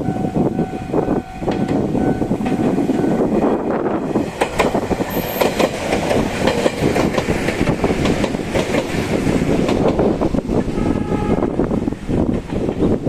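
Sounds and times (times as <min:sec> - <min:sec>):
electric train passing: 0:00.0 - 0:13.0
wheels clacking over rail joints: 0:01.4 - 0:10.7.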